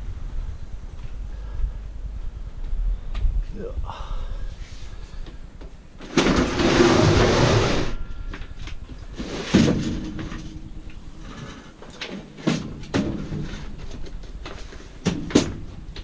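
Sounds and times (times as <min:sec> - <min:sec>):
scrap metal scraping: 0:06.0 - 0:08.2, 0:09.1 - 0:14.0.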